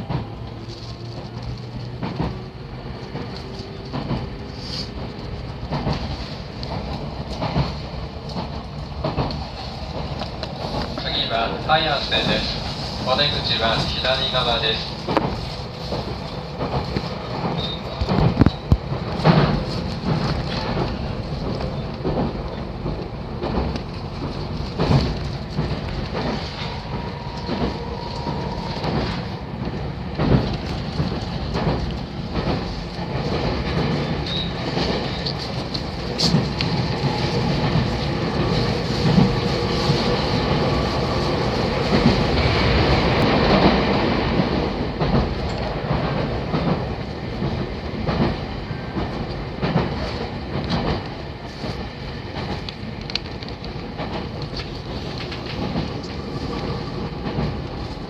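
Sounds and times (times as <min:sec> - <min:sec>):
train rumble: 0:00.0 - 0:58.0
wheels clacking over rail joints: 0:14.6 - 0:40.8.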